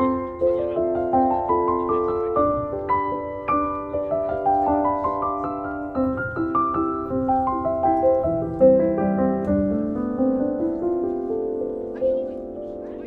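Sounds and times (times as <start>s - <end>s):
gentle piano melody: 0.0s - 13.0s.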